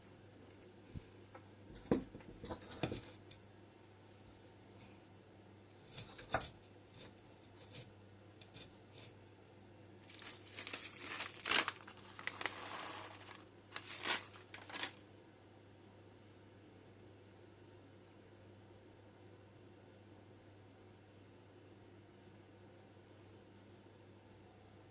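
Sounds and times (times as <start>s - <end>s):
crinkling and rustling: 10.0s - 15.0s.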